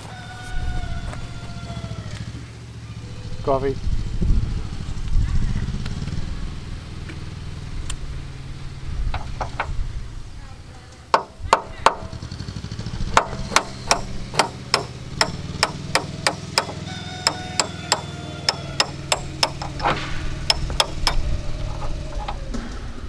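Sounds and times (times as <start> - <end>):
steady low hum: 3.0 - 23.0
hammer tapping on metal: 11.2 - 12.2, 13.1 - 22.4.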